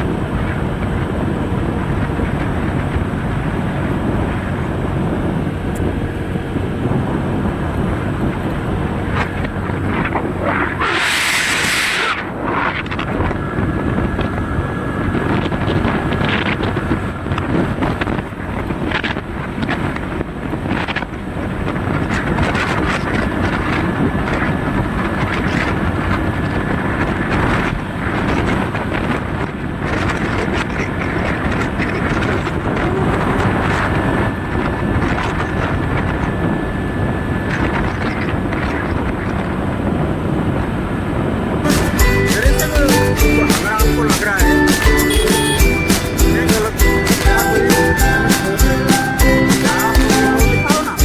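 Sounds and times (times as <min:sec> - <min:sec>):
wind buffeting microphone: 0:00.0 - 0:42.2
vehicle rumble: 0:00.0 - 0:51.0
faint high whine: 0:33.0 - 0:39.5.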